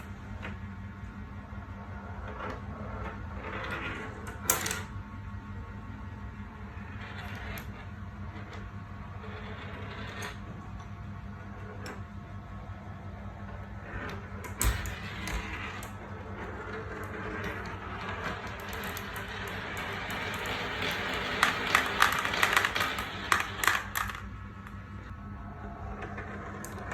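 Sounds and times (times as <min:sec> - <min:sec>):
marbles rolling on track: 0:13.9 - 0:24.8
marbles clicking on track: 0:17.0 - 0:24.8.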